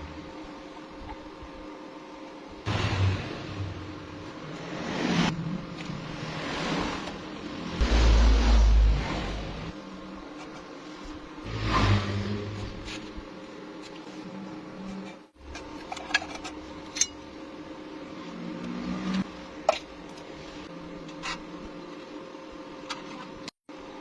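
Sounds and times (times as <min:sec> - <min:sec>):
steady machine hum: 0:00.0 - 0:24.0.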